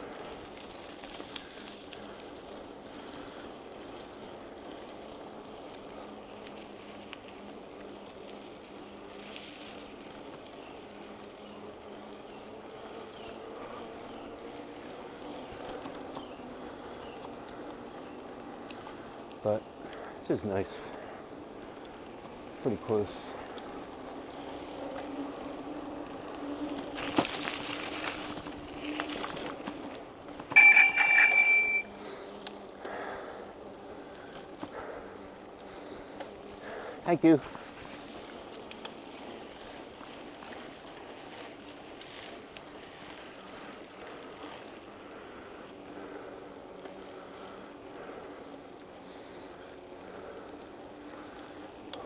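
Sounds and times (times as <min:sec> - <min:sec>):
bicycle tyres rolling on trail: 0:00.0 - 0:52.0
thin high whine: 0:30.4 - 0:32.2
bicycle bell ringing: 0:30.5 - 0:31.9
bird chirps: 0:30.6 - 0:31.8.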